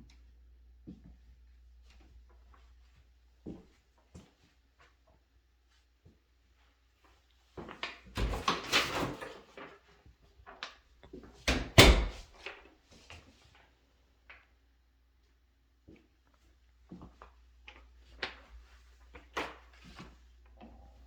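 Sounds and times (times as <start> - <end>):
door rattling knocks: 11.5 - 12.2
door shutting bang: 11.5 - 12.2.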